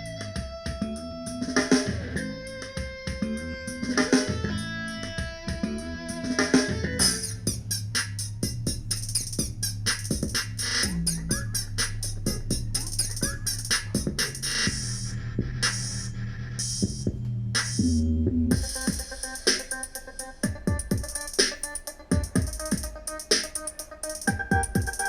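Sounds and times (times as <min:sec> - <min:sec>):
guitar track with drums: 0:00.0 - 0:07.6, 0:18.5 - 0:25.0
drum-machine beat with bass: 0:00.0 - 0:25.0.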